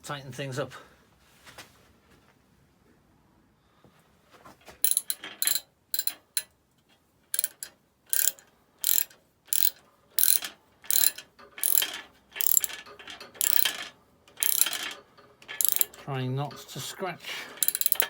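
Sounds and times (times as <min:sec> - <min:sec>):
ratchet wrench clicking: 0:04.8 - 0:06.5, 0:07.3 - 0:16.0, 0:17.6 - 0:18.0.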